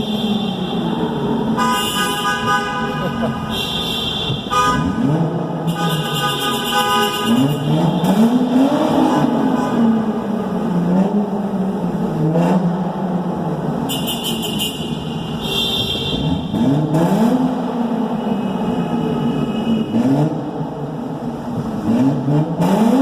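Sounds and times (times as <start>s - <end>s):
car engine revving loud exhaust: 0.0s - 23.0s.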